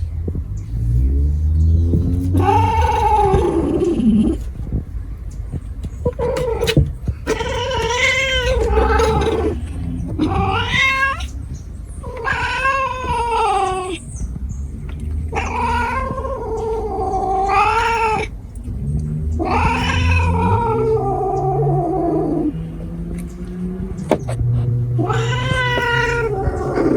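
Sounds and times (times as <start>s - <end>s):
cat yowling: 2.3s - 4.5s, 6.1s - 11.4s, 12.0s - 14.3s, 15.2s - 18.3s, 19.4s - 22.6s, 24.0s - 26.9s.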